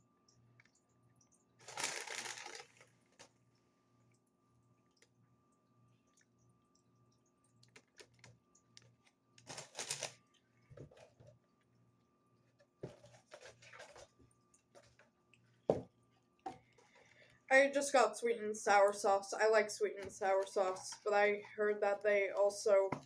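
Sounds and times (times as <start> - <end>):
paper and plastic rustling: 1.6 - 3.4, 9.4 - 11.4, 12.6 - 15.1.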